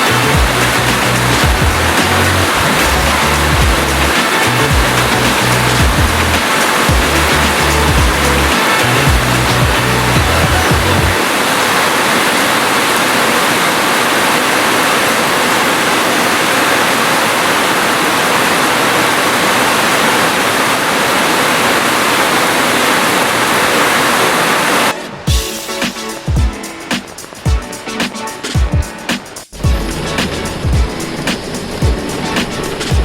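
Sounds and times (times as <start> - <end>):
music with a beat: 0.0 - 11.2, 25.3 - 33.0
heavy rain: 0.0 - 27.8, 29.3 - 33.0.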